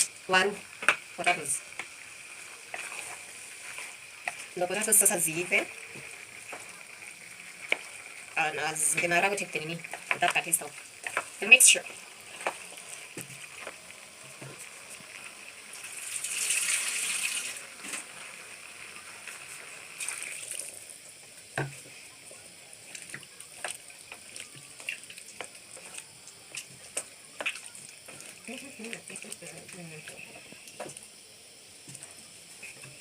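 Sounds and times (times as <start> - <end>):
food frying in a pot: 0.0 - 33.0
rush of liquid: 19.9 - 20.8.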